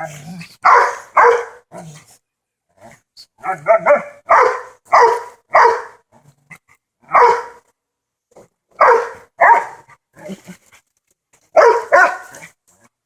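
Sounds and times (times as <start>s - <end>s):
dog barking: 0.6s - 1.8s, 3.5s - 6.0s, 7.1s - 7.6s, 8.8s - 9.9s, 11.6s - 12.5s.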